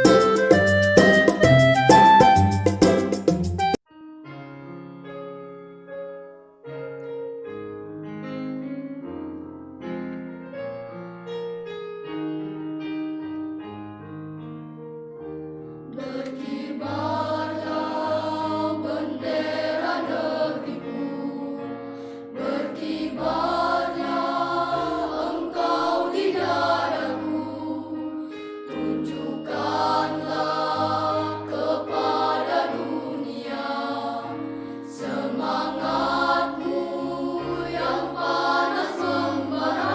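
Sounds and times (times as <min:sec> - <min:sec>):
piano accompaniment: 0:00.0 - 0:39.9
children's choir singing: 0:15.9 - 0:39.9.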